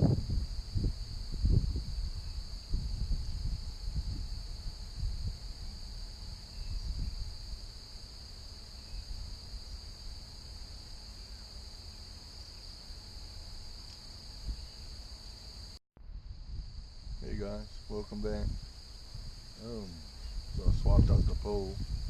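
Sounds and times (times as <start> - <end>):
low wind rumble on microphone: 0.0 - 10.5, 14.3 - 14.8, 16.0 - 22.0
high-pitched insect chorus: 0.0 - 22.0.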